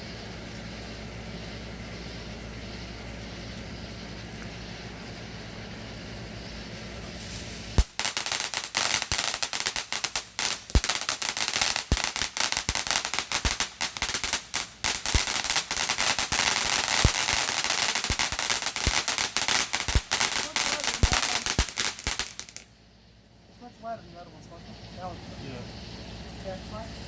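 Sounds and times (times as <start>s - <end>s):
firework crackling and popping: 0.0s - 22.8s
low steady hum: 0.0s - 27.0s
firework bangs: 3.8s - 22.7s.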